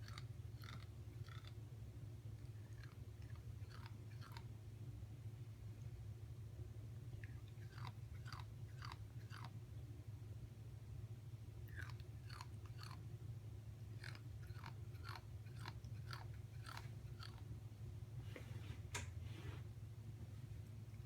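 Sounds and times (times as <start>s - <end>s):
teeth grinding: 0.0s - 1.6s, 2.5s - 4.5s, 7.2s - 9.6s, 11.7s - 13.0s, 13.9s - 17.5s.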